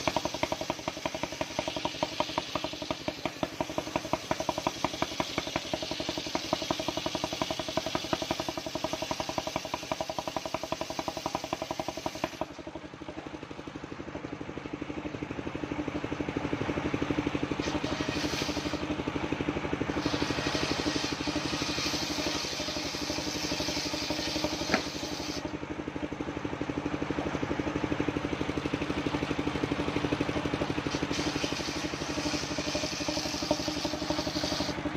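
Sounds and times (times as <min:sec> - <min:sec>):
hiss: 0:00.0 - 0:12.7, 0:17.6 - 0:18.9, 0:19.9 - 0:25.5, 0:30.8 - 0:34.8
sawmill engine running: 0:00.0 - 0:34.9.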